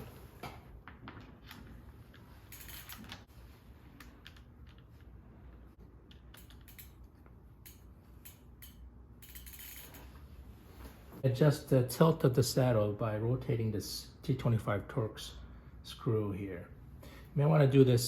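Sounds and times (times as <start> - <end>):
metallic clicks and scrapes: 1.4 - 3.3, 6.0 - 10.2.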